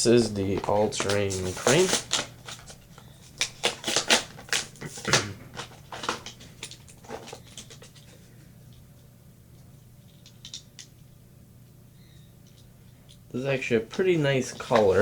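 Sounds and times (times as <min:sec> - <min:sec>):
toy and packaging clicks and rustles: 0:00.2 - 0:08.8, 0:14.4 - 0:15.0.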